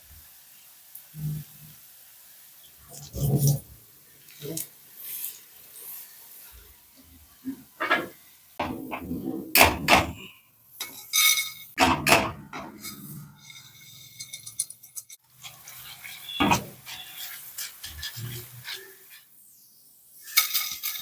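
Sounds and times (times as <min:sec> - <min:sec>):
utensils and dishes clattering: 0:07.8 - 0:19.3, 0:20.2 - 0:21.0.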